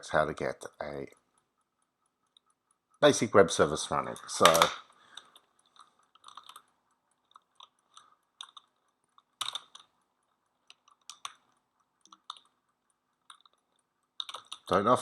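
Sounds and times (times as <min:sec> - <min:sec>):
keyboard keys clicking: 0:06.2 - 0:06.7, 0:12.0 - 0:12.5.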